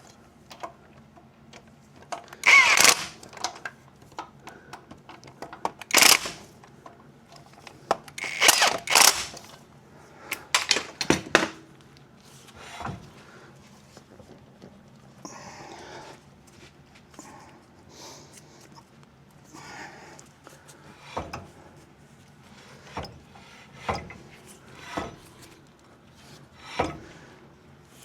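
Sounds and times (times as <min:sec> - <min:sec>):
handheld power tool bursts: 0:02.4 - 0:03.5, 0:05.8 - 0:06.5, 0:08.1 - 0:09.5, 0:10.4 - 0:11.1.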